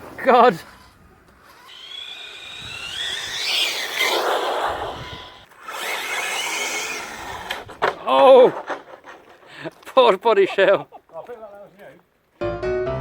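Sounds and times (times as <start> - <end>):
drivetrain and tyres rushing: 0.0 - 9.4
electric toy car motor whining: 0.6 - 7.8.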